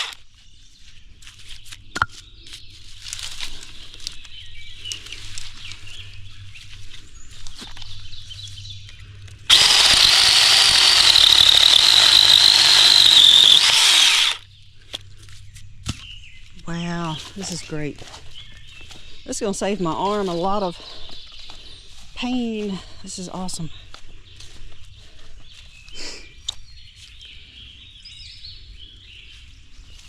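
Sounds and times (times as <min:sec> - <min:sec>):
branches rustling: 0:02.4 - 0:08.0, 0:09.5 - 0:14.4
branches clicking: 0:09.5 - 0:14.4
electric chainsaw cutting wood: 0:09.5 - 0:14.4.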